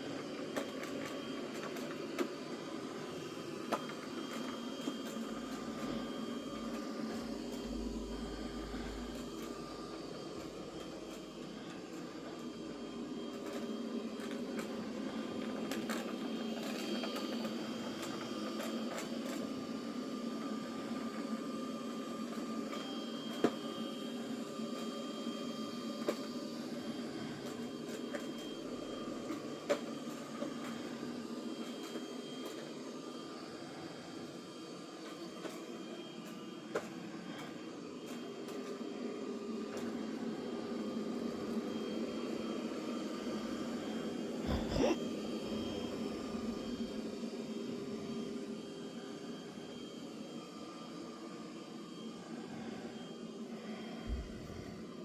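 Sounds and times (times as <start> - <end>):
robot vacuum running: 0.0 - 24.2, 25.6 - 51.4, 54.0 - 55.0
faint whining tones: 3.0 - 14.6.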